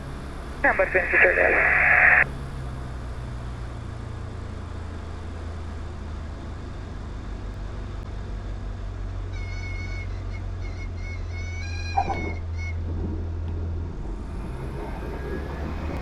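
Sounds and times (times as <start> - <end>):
light aircraft engine droning: 0.0 - 16.0
stall warning chirping: 10.6 - 12.8.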